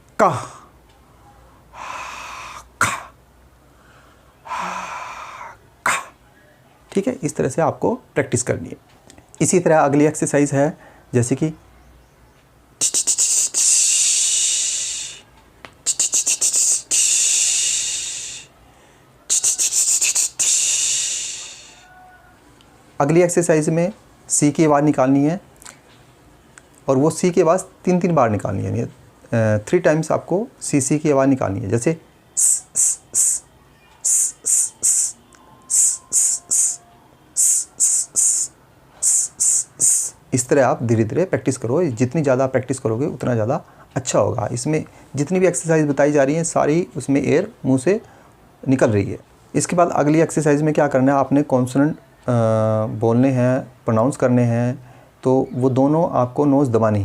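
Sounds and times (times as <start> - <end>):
man hissing through mouth: 1.7 - 3.2, 4.5 - 6.2, 12.8 - 18.6, 19.3 - 21.9, 32.4 - 36.8, 37.4 - 40.2.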